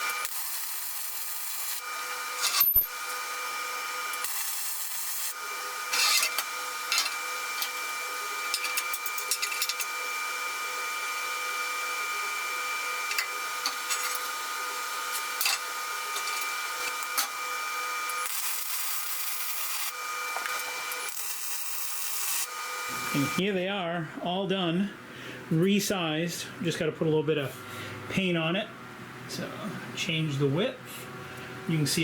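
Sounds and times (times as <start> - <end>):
welding arc crackling hiss: 0.0 - 10.6, 11.2 - 23.4
steady whine: 0.0 - 23.4.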